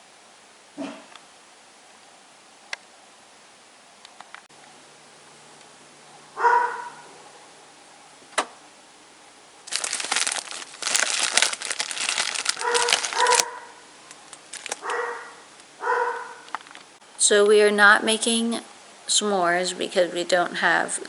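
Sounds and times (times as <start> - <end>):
dog barking: 0.8 - 1.1, 6.3 - 7.4, 12.6 - 13.8, 14.8 - 16.5
crinkling and crumpling: 9.6 - 16.9.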